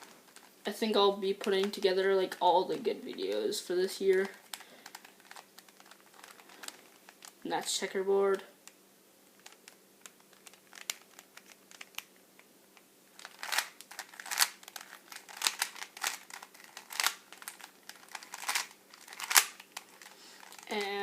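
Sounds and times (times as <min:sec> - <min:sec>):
puzzle cube clicking: 0:09.4 - 0:21.0.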